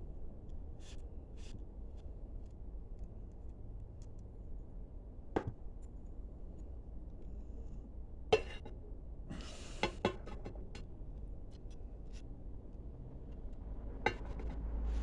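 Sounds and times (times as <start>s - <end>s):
low steady hum: 10.6s - 15.0s.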